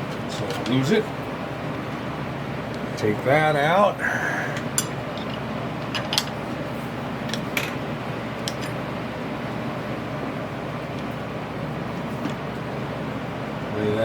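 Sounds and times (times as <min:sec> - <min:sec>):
machine hum: 0:00.0 - 0:14.0
metal tooling clicks: 0:08.4 - 0:08.8.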